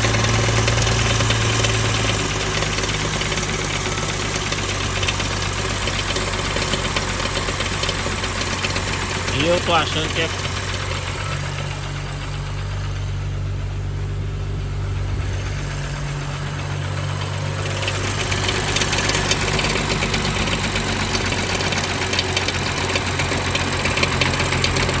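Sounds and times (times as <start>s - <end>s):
car engine idling: 0.0s - 25.0s
metallic ticking rattle: 15.0s - 25.0s.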